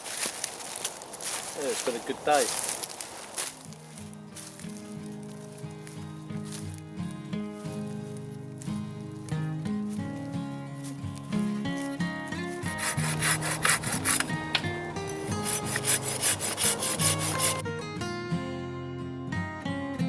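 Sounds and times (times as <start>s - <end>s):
saw cutting wood: 11.8s - 17.6s.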